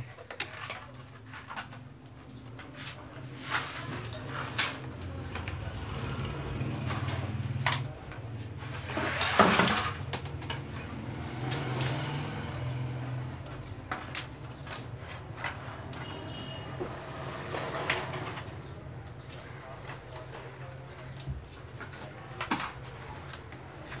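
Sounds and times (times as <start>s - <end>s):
metal parts clinking: 9.3s - 10.9s
rattling: 9.4s - 10.8s.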